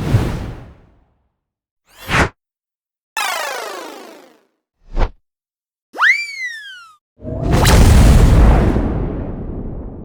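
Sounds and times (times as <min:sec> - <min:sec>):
synthesized downward pitch sweep: 0:03.2 - 0:04.4.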